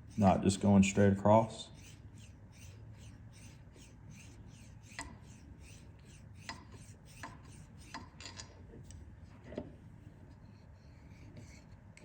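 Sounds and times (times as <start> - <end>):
hand file rasping on epoxy: 0.0 - 0.7, 1.6 - 8.1.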